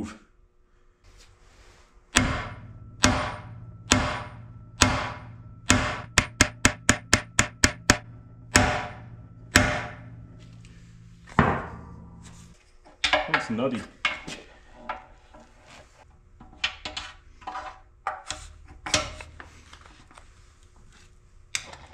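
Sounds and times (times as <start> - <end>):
hammer blows ringing on metal: 2.2 - 12.6.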